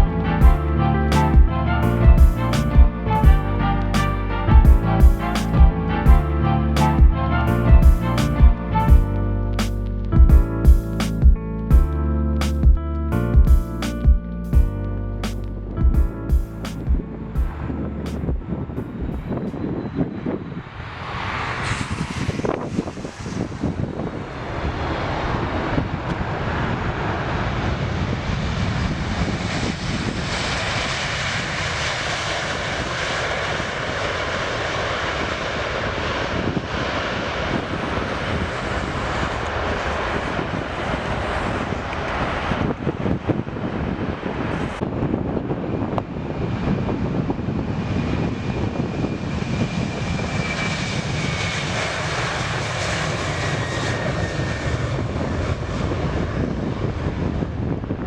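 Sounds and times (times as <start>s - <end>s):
high engine whine: 0.0s - 57.6s
jet engines running: 13.4s - 58.0s.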